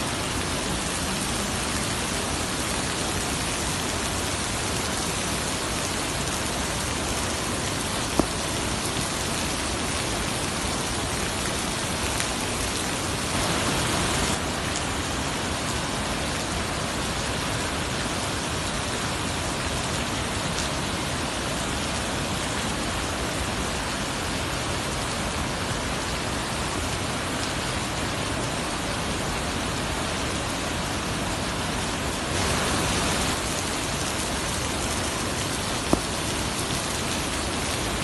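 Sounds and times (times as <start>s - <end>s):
waterfall rushing: 0.0s - 16.8s, 27.6s - 38.0s.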